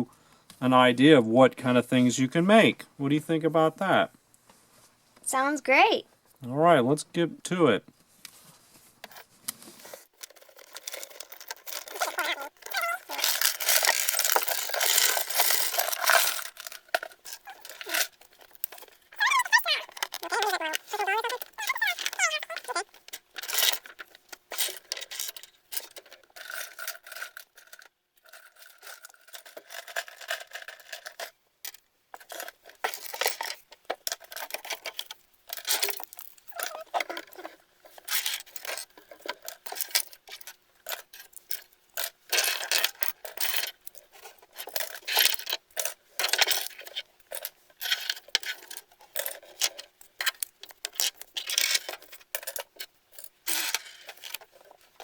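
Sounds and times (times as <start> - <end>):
plastic toy pieces clicking: 10.2 - 27.9, 44.6 - 54.5.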